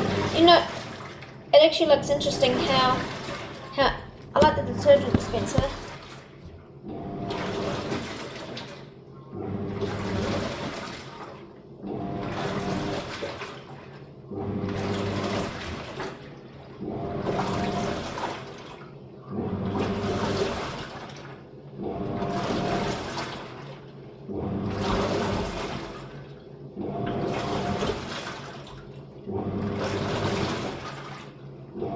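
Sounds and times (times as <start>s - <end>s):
water churning: 0.0s - 9.0s, 9.6s - 14.0s, 24.4s - 31.9s
washing machine motor humming: 0.0s - 31.9s.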